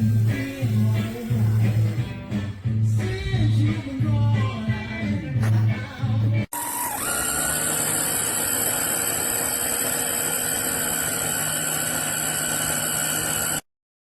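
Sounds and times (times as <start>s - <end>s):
spindle motor whine: 6.5s - 13.7s.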